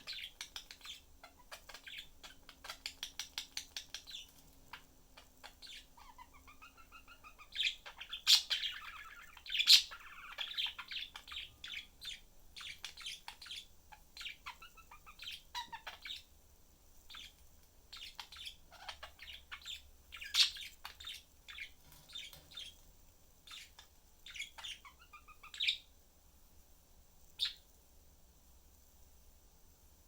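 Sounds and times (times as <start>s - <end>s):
budgerigars chattering and chirping: 0.0s - 16.3s, 18.0s - 22.8s, 23.5s - 25.9s.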